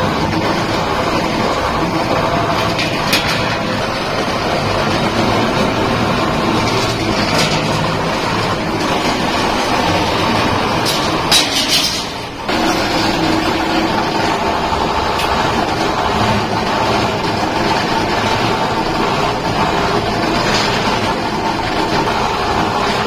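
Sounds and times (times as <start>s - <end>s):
machine running: 0.0s - 23.0s
sharp metallic knocks: 10.7s - 13.4s.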